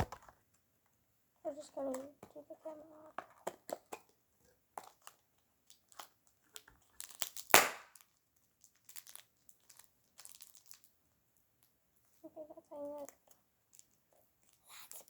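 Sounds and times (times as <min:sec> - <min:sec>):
plastic packaging crinkling: 0:04.8 - 0:11.0.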